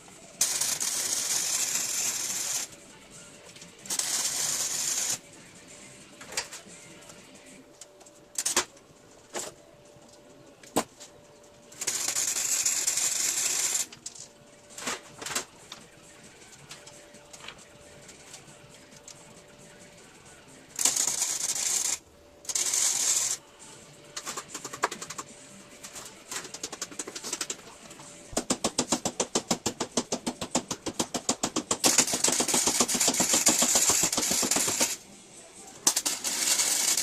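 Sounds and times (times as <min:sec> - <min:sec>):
arc welding crackle: 0:00.4 - 0:02.8, 0:03.9 - 0:05.2, 0:11.8 - 0:14.1, 0:20.8 - 0:23.4, 0:28.3 - 0:35.0, 0:35.8 - 0:37.0.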